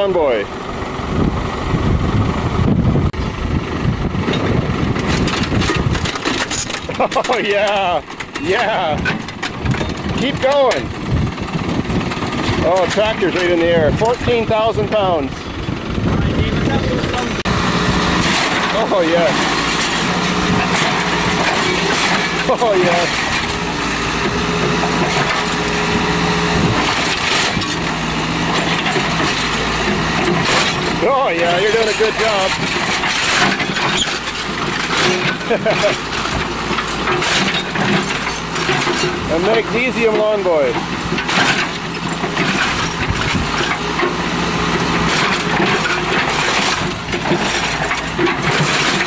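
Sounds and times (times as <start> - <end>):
backhoe engine running under load: 0.0 - 49.0
scrap crunching: 17.2 - 49.0.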